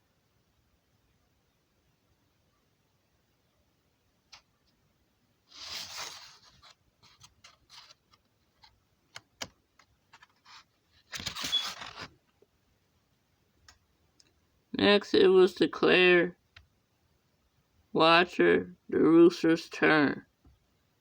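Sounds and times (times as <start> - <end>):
faint rustling: 5.5 - 8.8.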